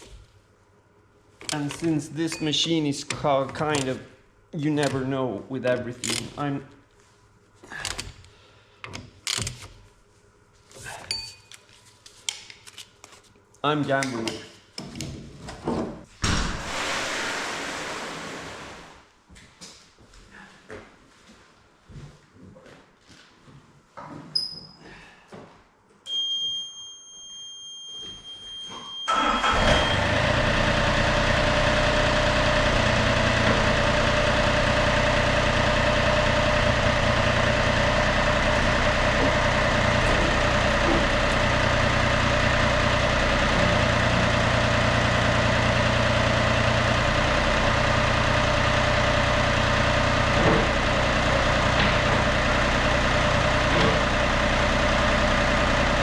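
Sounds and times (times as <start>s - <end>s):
high warning beep: 26.1s - 30.1s
diesel engine starting and idling: 29.1s - 56.0s.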